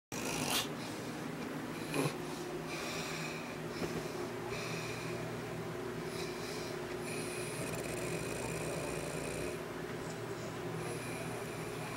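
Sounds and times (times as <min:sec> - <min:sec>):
steady low hum: 0:00.1 - 0:11.9
person snoring: 0:01.8 - 0:02.2, 0:07.1 - 0:09.6.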